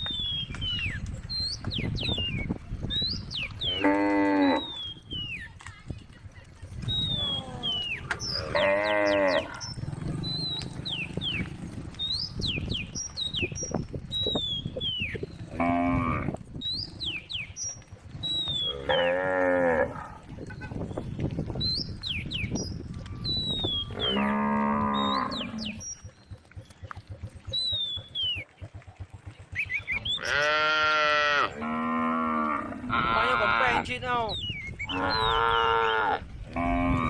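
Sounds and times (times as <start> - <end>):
cows mooing: 3.6 - 5.0, 7.2 - 12.0, 15.4 - 16.4, 18.3 - 20.3, 23.1 - 25.9, 30.1 - 33.9, 34.8 - 37.0.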